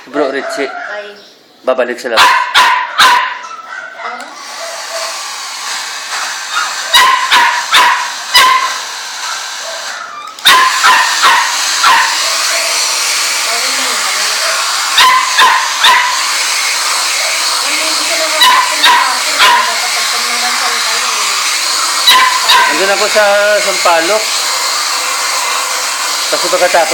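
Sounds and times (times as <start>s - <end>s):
small dog yapping: 2.2s - 5.1s, 6.2s - 12.9s, 14.4s - 16.3s, 18.4s - 19.7s, 21.8s - 22.8s.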